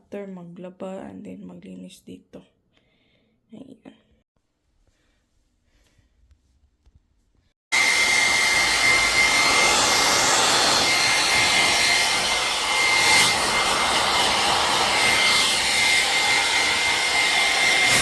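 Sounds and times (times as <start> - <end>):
electric fan appliance whirring: 7.8 - 18.0.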